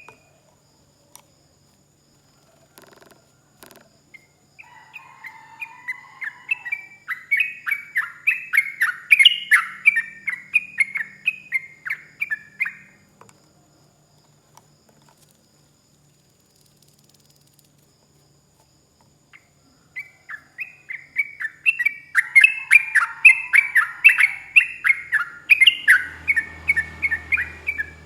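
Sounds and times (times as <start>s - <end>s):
bulbul singing rapid notes: 24.2s - 28.0s.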